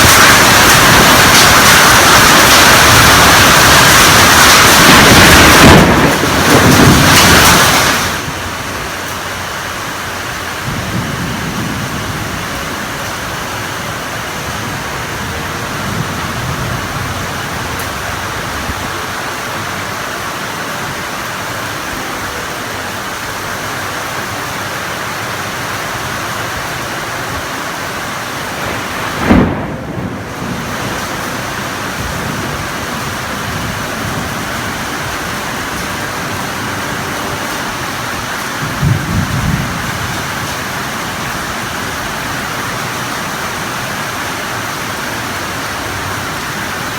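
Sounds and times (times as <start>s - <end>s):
heavy rain pouring: 0.0s - 46.9s
loud low thump: 28.6s - 31.1s.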